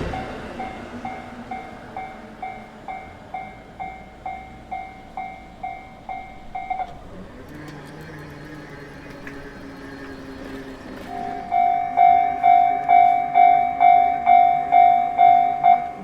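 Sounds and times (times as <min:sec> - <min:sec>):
passing train rumble: 0:00.0 - 0:16.0
level crossing bell dinging: 0:11.1 - 0:16.0.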